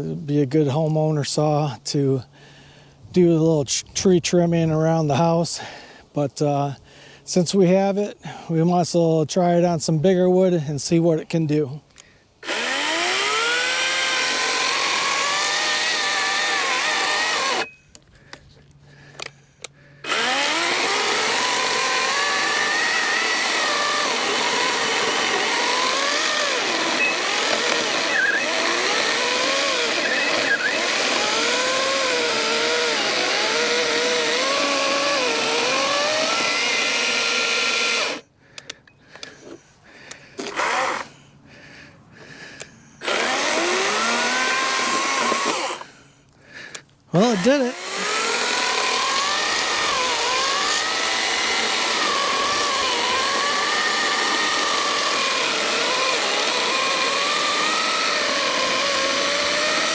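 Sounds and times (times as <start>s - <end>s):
electric chainsaw cutting log: 12.4s - 17.7s, 19.6s - 38.3s, 40.4s - 41.2s, 43.0s - 46.0s, 47.2s - 59.9s.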